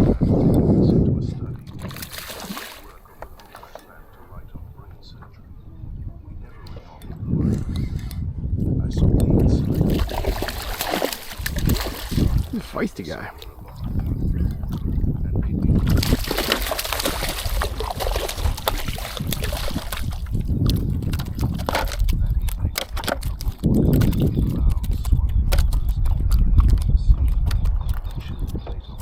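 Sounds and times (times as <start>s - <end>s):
wind buffeting microphone: 0.0s - 29.0s
water splashing: 1.6s - 4.4s, 9.7s - 15.0s, 15.7s - 25.0s
fish knocking against kayak: 1.7s - 4.0s, 9.7s - 15.0s, 15.6s - 28.8s.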